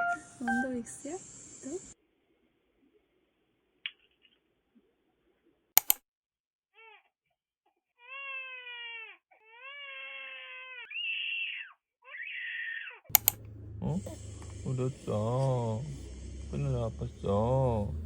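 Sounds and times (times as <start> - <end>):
sharp double click: 5.8 - 6.0, 13.1 - 13.5
baby crying: 6.8 - 7.1, 8.0 - 13.1.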